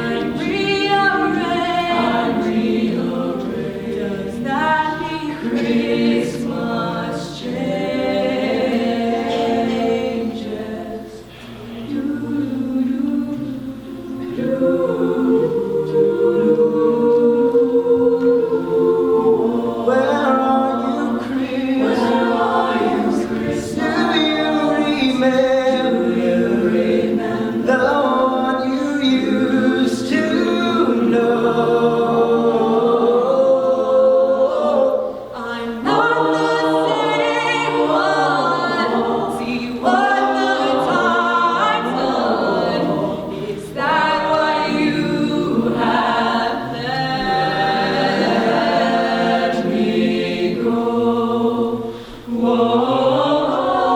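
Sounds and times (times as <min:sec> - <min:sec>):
choir singing a cappella: 0:00.0 - 0:53.9
singers breathing: 0:51.8 - 0:52.3.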